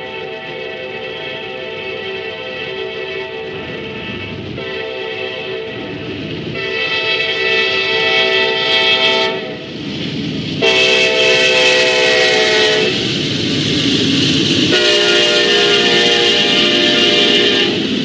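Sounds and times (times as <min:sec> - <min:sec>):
locomotive horn chord blasts: 0:00.0 - 0:09.6, 0:10.6 - 0:13.0, 0:14.7 - 0:17.9
passing train rumble: 0:00.0 - 0:18.0.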